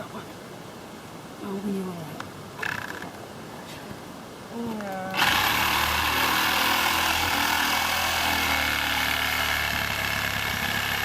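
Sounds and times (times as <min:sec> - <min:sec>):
power saw cutting tree trunk: 0:05.2 - 0:11.0.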